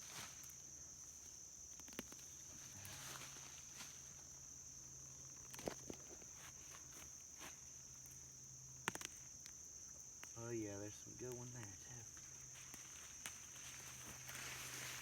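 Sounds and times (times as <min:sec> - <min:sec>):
crickets chirping: 0:00.0 - 0:15.0
clicks from handling plants: 0:01.8 - 0:02.3, 0:05.4 - 0:06.3, 0:08.8 - 0:09.6.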